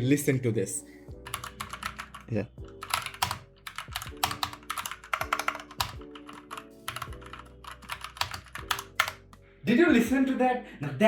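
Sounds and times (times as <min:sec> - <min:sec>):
background music: 0:00.0 - 0:11.0
mechanical keyboard typing: 0:01.2 - 0:09.4.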